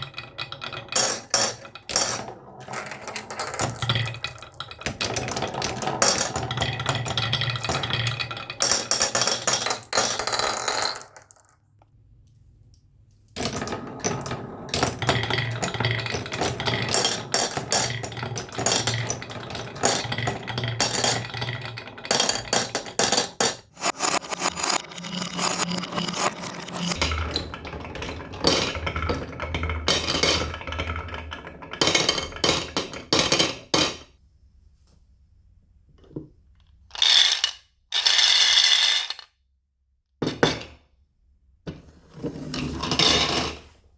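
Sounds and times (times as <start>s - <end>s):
marbles clattering down wooden run: 0.0s - 11.5s, 13.4s - 27.0s, 36.9s - 39.3s.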